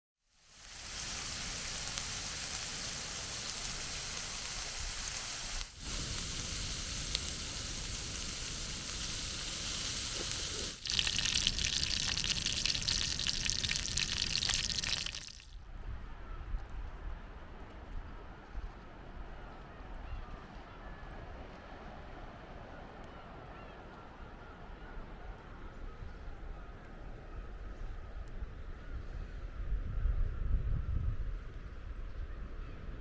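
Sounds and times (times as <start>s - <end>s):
food sizzling and crackling: 0.3s - 15.6s.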